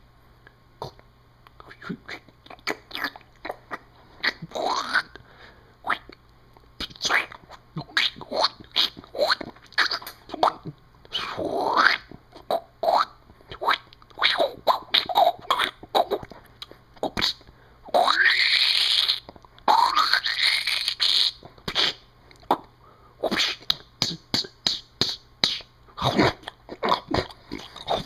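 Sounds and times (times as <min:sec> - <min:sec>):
mouth clicks and pops: 0:05.9 - 0:12.6, 0:13.5 - 0:17.5, 0:20.7 - 0:28.0.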